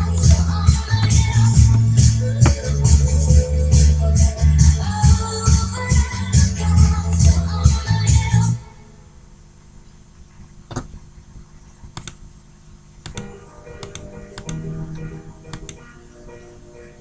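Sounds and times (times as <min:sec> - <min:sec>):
loud pop music: 0:00.0 - 0:08.7
quiet music with held notes: 0:00.0 - 0:09.1, 0:13.1 - 0:17.0
sharp clicks: 0:11.9 - 0:12.2, 0:15.5 - 0:15.8.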